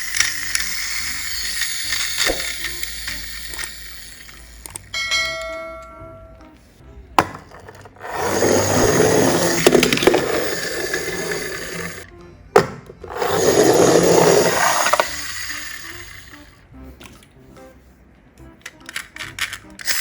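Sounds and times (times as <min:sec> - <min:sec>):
toy cars rolling down a ramp: 0:00.0 - 0:05.3, 0:07.5 - 0:12.0, 0:13.1 - 0:16.6, 0:18.9 - 0:20.0.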